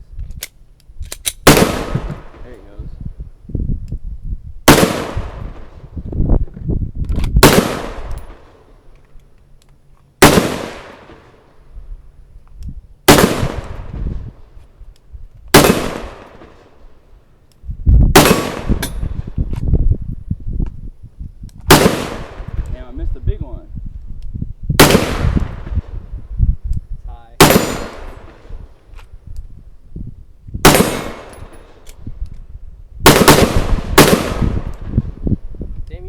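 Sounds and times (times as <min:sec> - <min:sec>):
gunshots: 0:01.4 - 0:02.5, 0:04.7 - 0:05.6, 0:07.4 - 0:08.6, 0:10.2 - 0:11.3, 0:13.1 - 0:13.9, 0:15.5 - 0:16.7, 0:18.2 - 0:19.1, 0:21.7 - 0:22.9, 0:24.8 - 0:25.9, 0:27.4 - 0:28.6, 0:30.6 - 0:31.8, 0:33.0 - 0:35.0.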